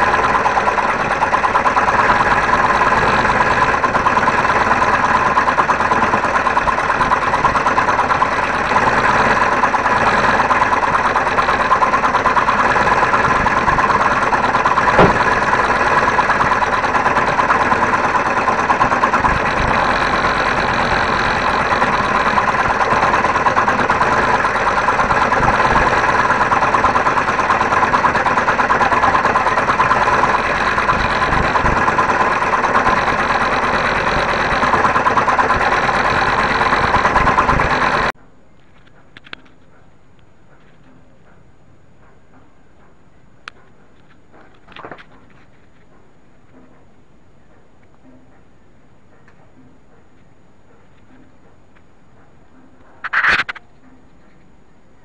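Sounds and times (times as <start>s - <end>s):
scroll saw cutting wood: 0.0s - 38.1s
sharp click: 53.0s - 54.0s.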